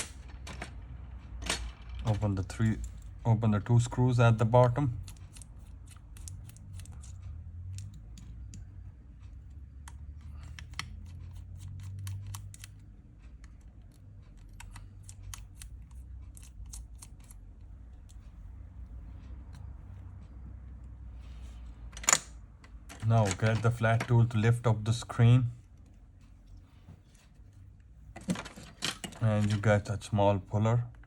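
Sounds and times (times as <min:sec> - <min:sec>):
low steady hum: 0:00.0 - 0:31.0
screwdriver clicking on tiny screws: 0:04.6 - 0:08.7, 0:09.9 - 0:12.9, 0:14.4 - 0:17.4.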